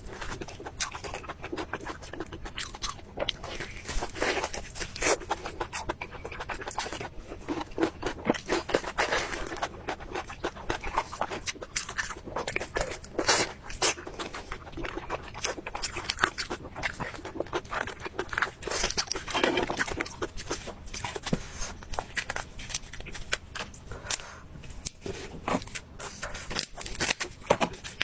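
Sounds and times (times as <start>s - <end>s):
chewing and crunching food: 0.0s - 28.0s.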